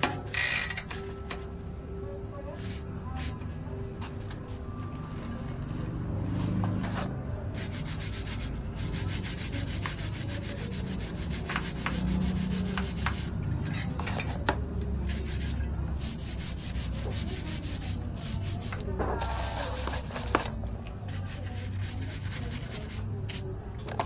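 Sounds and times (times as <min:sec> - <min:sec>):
scrubbing a bicycle: 0:07.6 - 0:13.4, 0:15.0 - 0:23.4.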